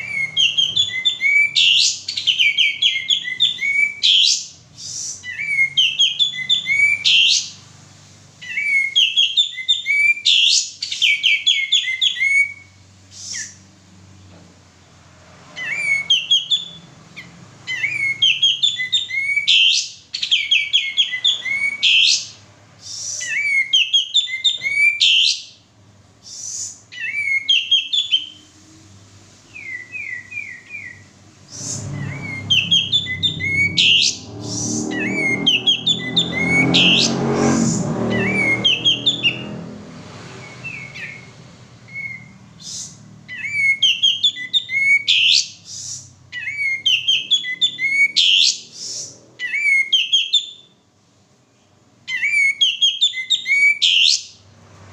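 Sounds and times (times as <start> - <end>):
bulbul chirping and whistling: 0.0 - 7.6, 8.4 - 13.7, 15.6 - 25.6, 26.2 - 28.5, 29.5 - 39.5, 40.4 - 50.8, 52.0 - 54.4
low rumbling noise: 28.4 - 43.3.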